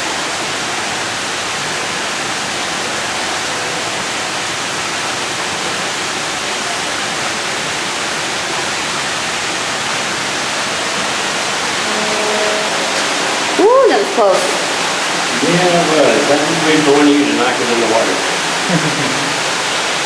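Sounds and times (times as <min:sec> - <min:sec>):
water feature rushing: 0:00.0 - 0:20.0.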